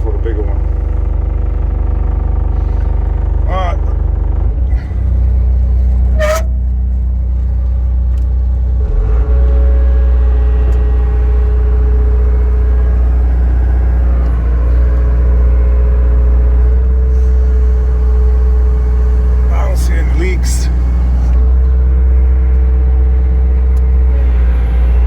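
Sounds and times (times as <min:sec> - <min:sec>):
excavator diesel engine running: 0:00.0 - 0:25.0
hydraulic whine: 0:04.5 - 0:07.0, 0:08.9 - 0:22.7, 0:23.4 - 0:25.0
short squeak: 0:06.1 - 0:06.6.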